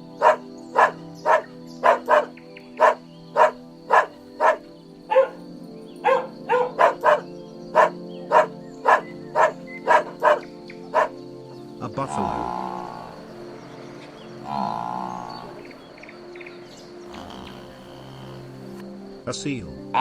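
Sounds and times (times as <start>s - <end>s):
background music: 0.0s - 20.0s
dog barking: 0.1s - 5.4s, 6.0s - 11.2s.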